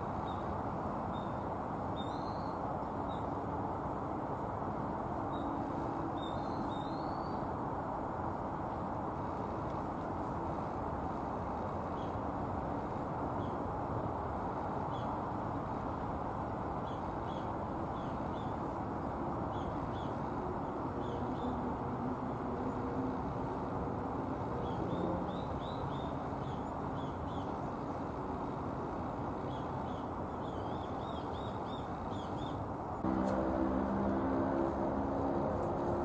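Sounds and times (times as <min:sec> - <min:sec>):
songbirds chirping: 0:24.3 - 0:33.3
low city hum: 0:32.7 - 0:36.0.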